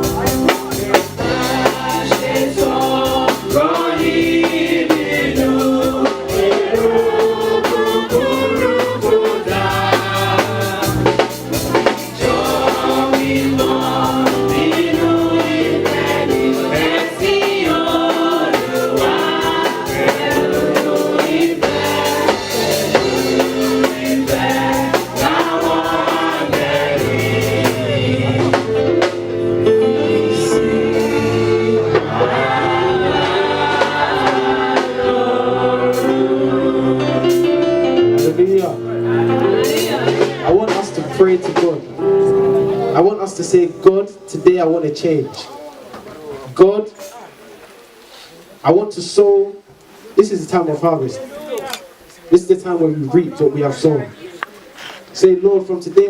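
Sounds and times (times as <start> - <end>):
steady drum beat: 0.0 - 42.0
choir singing gospel song: 0.0 - 45.4
keyboard accompaniment: 0.0 - 48.0.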